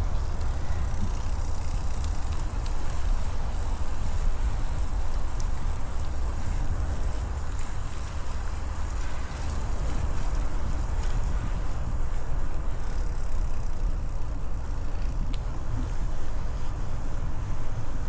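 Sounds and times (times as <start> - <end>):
faint ticks: 0.0 - 6.4, 12.4 - 16.0
tyres rolling on forest path: 0.0 - 18.0
wind buffeting microphone: 0.0 - 18.0.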